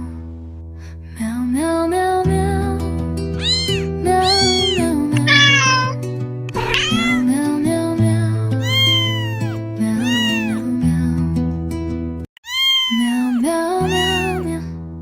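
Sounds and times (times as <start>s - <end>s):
cat meowing: 3.4s - 7.4s, 8.6s - 10.7s, 12.4s - 14.5s.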